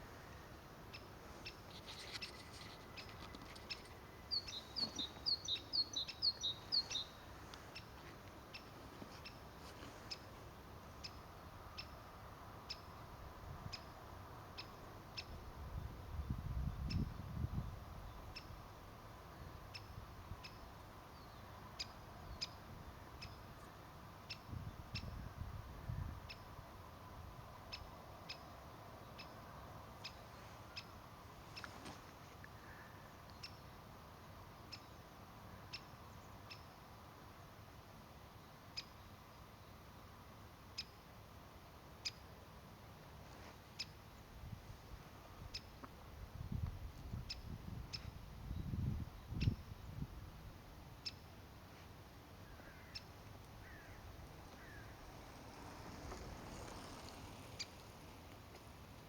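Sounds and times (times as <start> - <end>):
woodpecker calling: 0.9 - 9.4, 52.4 - 58.7
faint low rumbles: 53.4 - 59.0.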